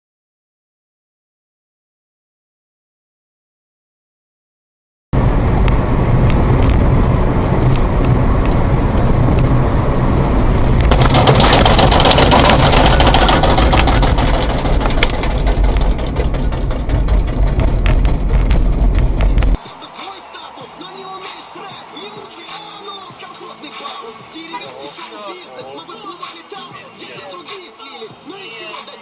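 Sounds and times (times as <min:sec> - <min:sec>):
car road engine and wind noise: 0:05.2 - 0:19.6
scattered clicks: 0:10.8 - 0:19.6.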